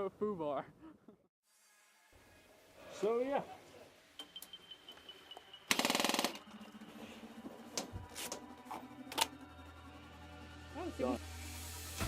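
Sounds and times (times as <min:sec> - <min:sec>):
airsoft gun full-auto burst: 0:05.7 - 0:06.5.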